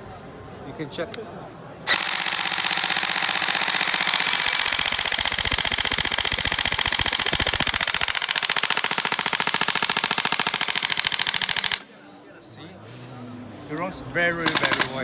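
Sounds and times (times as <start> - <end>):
airsoft gun full auto fire: 1.9 - 11.9, 14.4 - 15.0.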